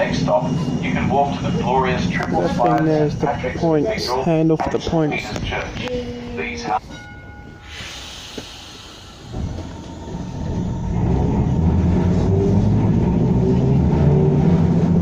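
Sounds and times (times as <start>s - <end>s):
tram rumble and running noise: 0.0s - 15.0s.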